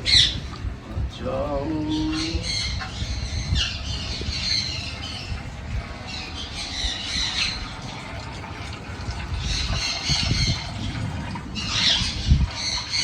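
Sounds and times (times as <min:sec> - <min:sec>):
budgerigars chirping: 0:00.0 - 0:00.4, 0:02.0 - 0:05.4
low rumbling background: 0:00.0 - 0:13.0.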